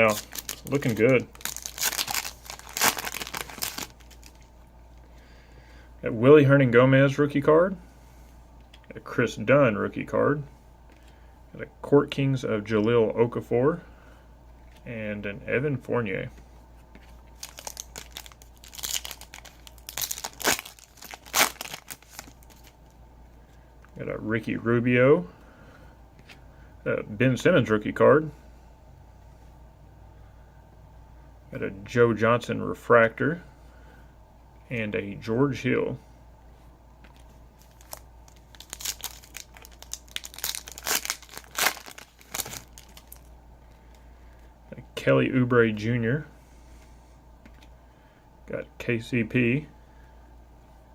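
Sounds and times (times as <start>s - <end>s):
foil wrapper ripping: 0.0s - 4.4s, 17.4s - 22.8s, 37.6s - 43.3s
foil wrapper crinkling: 0.0s - 4.5s, 17.2s - 22.8s, 37.1s - 43.3s.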